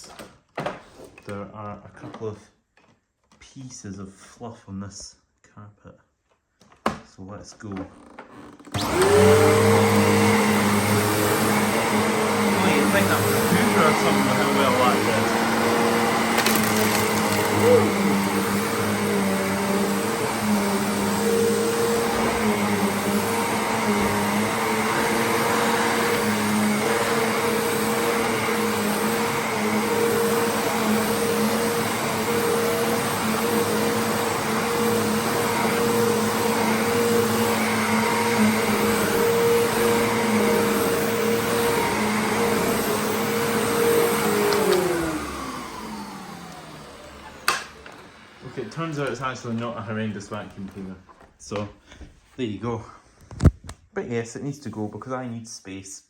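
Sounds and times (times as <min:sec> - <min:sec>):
vacuum motor spinning down: 0:08.4 - 0:50.5
vacuum cleaner running: 0:08.4 - 0:52.0.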